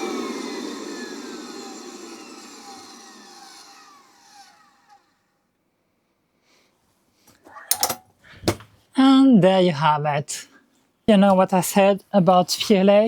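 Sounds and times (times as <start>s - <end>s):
vacuum motor whine spinning down: 0.0s - 5.4s.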